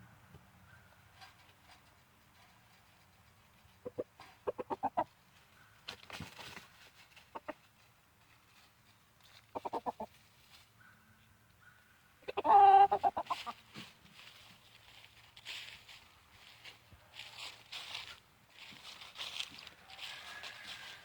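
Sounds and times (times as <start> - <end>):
chickens clucking: 0.7 - 10.8, 12.2 - 14.0.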